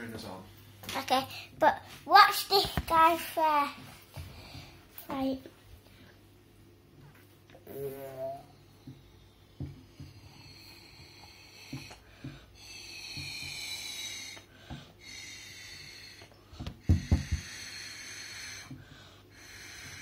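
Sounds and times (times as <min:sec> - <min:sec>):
breathy blowing into slime: 0:10.2 - 0:20.0.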